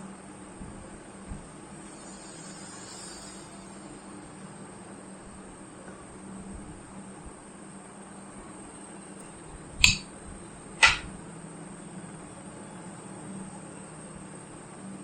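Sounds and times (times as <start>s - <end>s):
low mains hum and hiss: 0.0s - 15.0s
sharp clicks: 9.8s - 10.1s, 10.8s - 11.1s.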